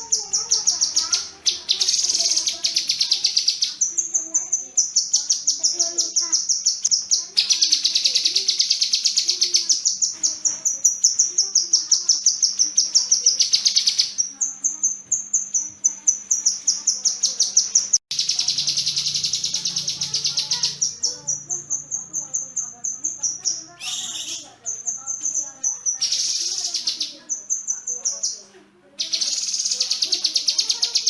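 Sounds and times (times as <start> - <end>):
bird trilling rapid high notes: 15.4 - 27.2.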